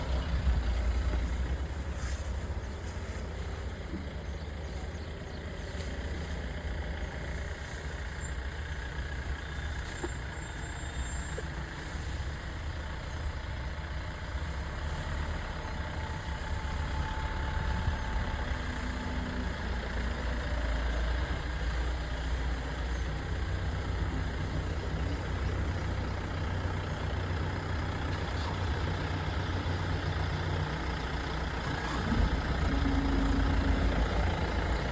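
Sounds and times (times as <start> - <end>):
engine idling: 0.0 - 34.9.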